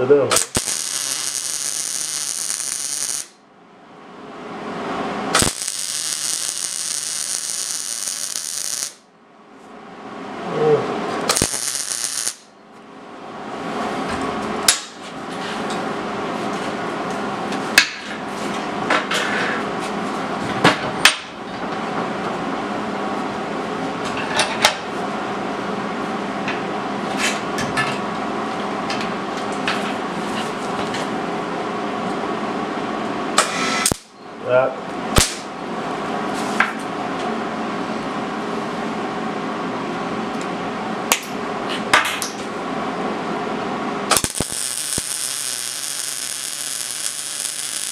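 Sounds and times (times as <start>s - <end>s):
welding arc crackling buzz: 0.0s - 3.4s, 5.3s - 9.1s, 11.2s - 12.6s, 33.4s - 34.1s, 35.1s - 35.5s, 44.1s - 47.9s.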